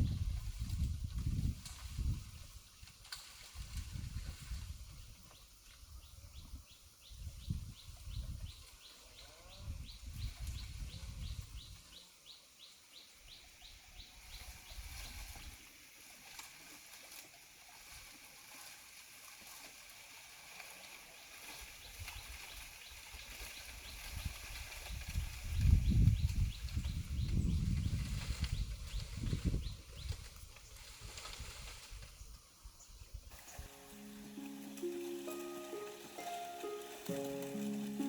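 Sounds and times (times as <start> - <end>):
steady high hiss: 33.3 - 38.0.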